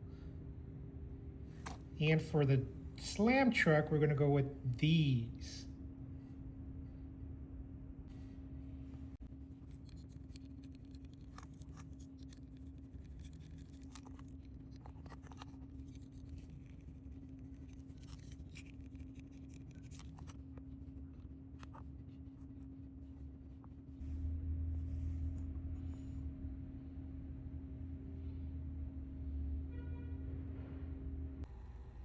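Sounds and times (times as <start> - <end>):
louder low hum: 0.0 - 32.0
low electrical hum: 0.0 - 32.0
small parts clicking and scraping: 9.5 - 21.9.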